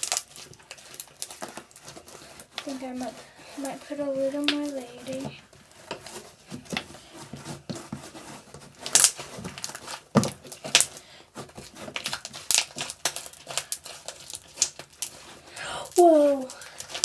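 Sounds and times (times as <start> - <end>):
slime crackling and snapping: 0.0 - 1.9, 8.9 - 11.0, 12.0 - 15.2.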